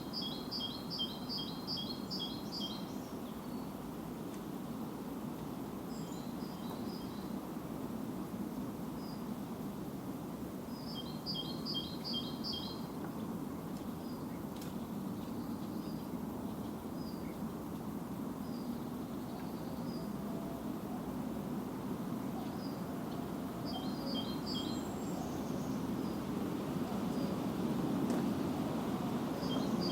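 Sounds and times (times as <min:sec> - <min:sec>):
songbirds chirping: 0:10.8 - 0:21.2, 0:22.1 - 0:27.7, 0:28.6 - 0:29.9.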